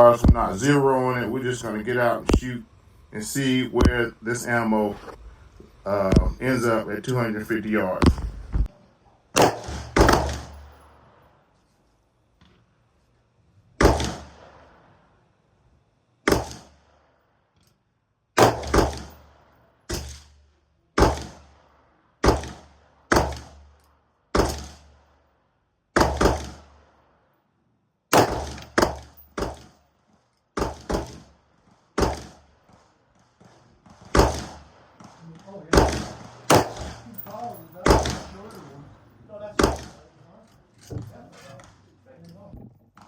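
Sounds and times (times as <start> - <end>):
rifle shots ringing: 9.4 - 11.4, 13.8 - 15.0, 16.3 - 16.9, 18.4 - 21.6, 26.0 - 26.9, 28.1 - 29.8, 30.6 - 40.2.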